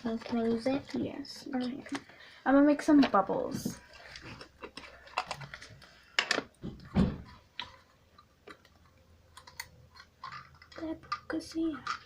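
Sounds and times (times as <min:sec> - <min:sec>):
bowls and containers clicking: 0:04.6 - 0:12.0.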